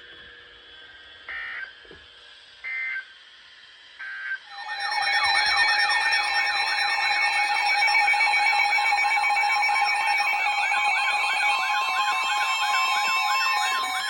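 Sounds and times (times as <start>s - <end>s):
digital data tone bursts: 4.5s - 14.0s
warbling alert siren: 4.5s - 14.0s.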